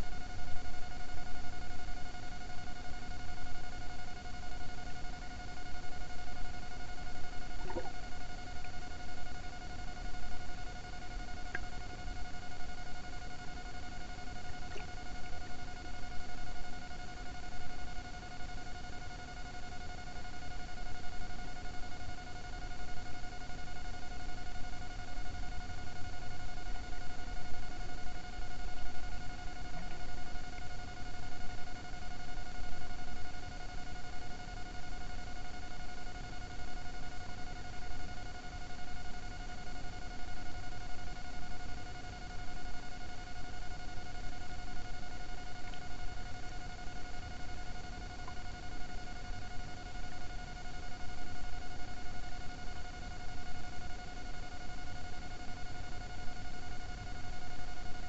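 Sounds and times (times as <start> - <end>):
steady high whine: 0.0 - 57.7
low unsteady rumbling: 7.6 - 8.1.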